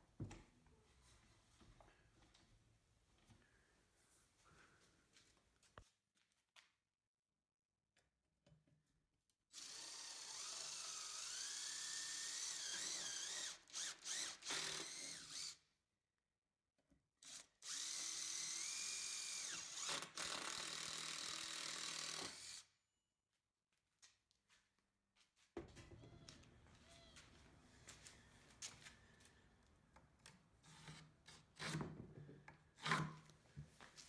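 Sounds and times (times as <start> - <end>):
power drill boring: 9.6 - 15.6, 17.2 - 22.7.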